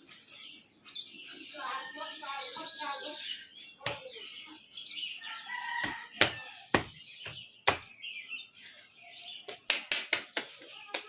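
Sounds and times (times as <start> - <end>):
hands slapping head: 3.8 - 4.0, 7.6 - 7.9, 9.5 - 11.0.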